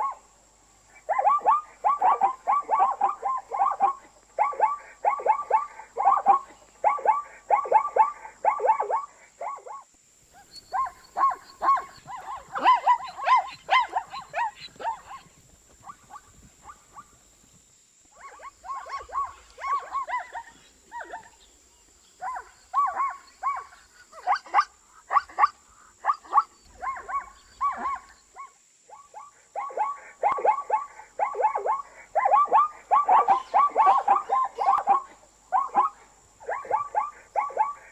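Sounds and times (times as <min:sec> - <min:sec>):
zebra calling: 0:10.6 - 0:17.0, 0:29.8 - 0:37.9.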